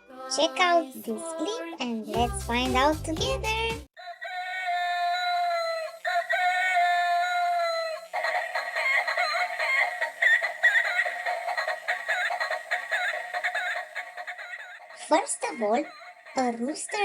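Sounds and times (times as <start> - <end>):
toy chicken high-pitched singing: 4.0 - 17.0.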